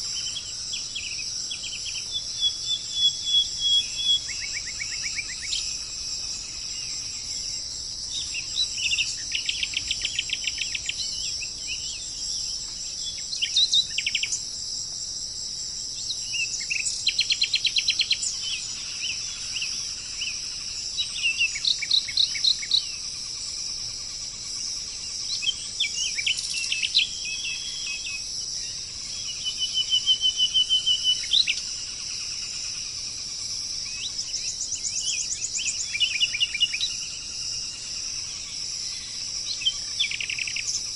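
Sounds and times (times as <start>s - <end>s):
insect chorus: 0.0s - 40.9s
songbirds singing: 0.0s - 40.9s.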